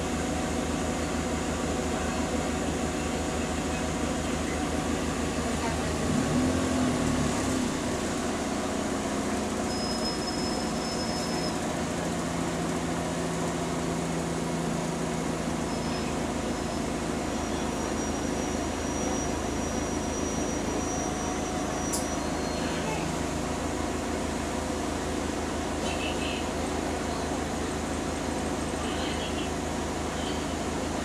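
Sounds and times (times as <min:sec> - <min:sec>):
bus engine and road noise: 0:00.0 - 0:31.0
thin high whistle: 0:09.7 - 0:11.6, 0:17.7 - 0:22.6.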